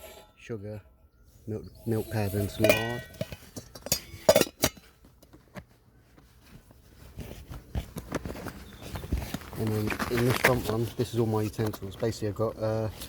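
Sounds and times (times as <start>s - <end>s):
containers clinking: 2.0s - 4.9s
rustling and handling: 2.1s - 13.0s.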